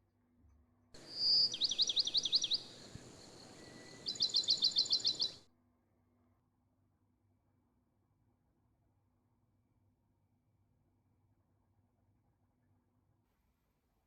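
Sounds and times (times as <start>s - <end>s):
light hiss: 1.0s - 5.4s
songbird singing: 1.0s - 5.4s.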